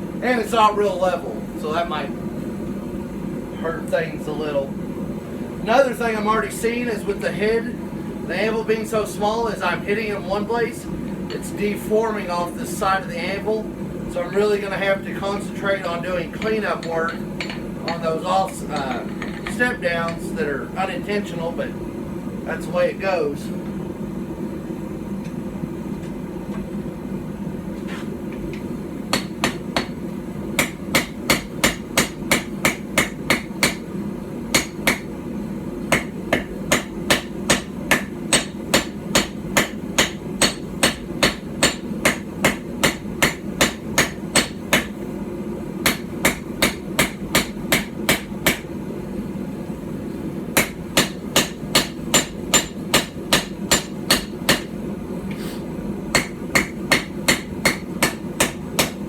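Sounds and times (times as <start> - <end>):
hammer striking metal on anvil: 16.4 - 18.1, 29.1 - 30.0, 30.6 - 33.9, 34.5 - 35.1, 35.9 - 44.9, 45.8 - 48.6, 50.6 - 54.7, 56.1 - 59.0.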